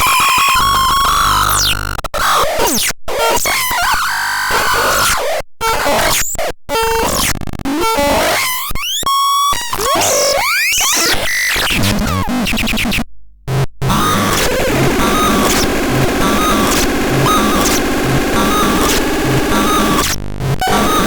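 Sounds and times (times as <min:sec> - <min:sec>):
synthesizer tones and noise: 0:13.5 - 0:21.0.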